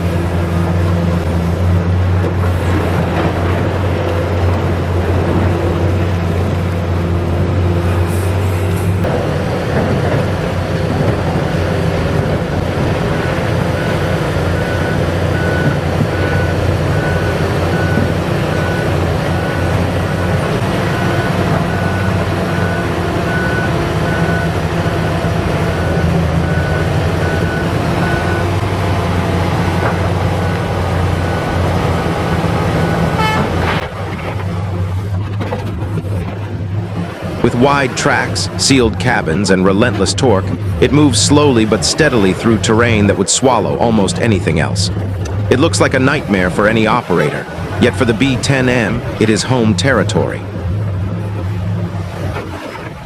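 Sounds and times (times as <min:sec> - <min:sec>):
diesel engine running under load: 0:00.0 - 0:53.0
warning beeper: 0:37.4 - 0:50.5.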